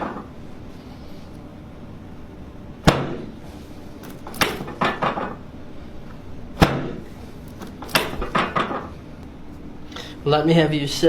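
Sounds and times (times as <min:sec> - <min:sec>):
treatment table thumps: 0:02.8 - 0:03.4, 0:04.0 - 0:05.4, 0:06.5 - 0:09.0.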